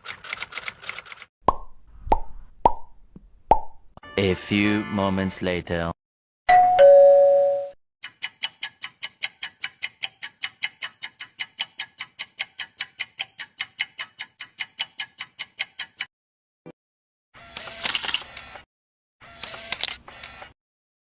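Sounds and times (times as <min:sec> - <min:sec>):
rapid clock ticking: 0:08.0 - 0:16.1.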